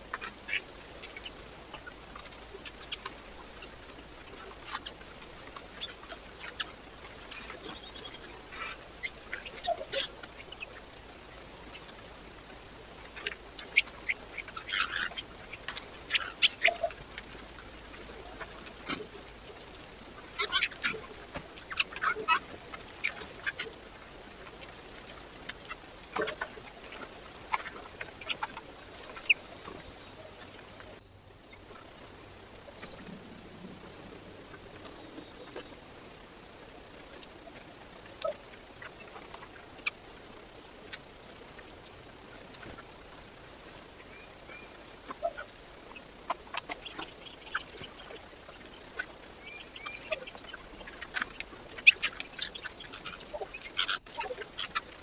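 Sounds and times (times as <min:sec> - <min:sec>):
faint steady hiss: 0:00.0 - 0:55.0.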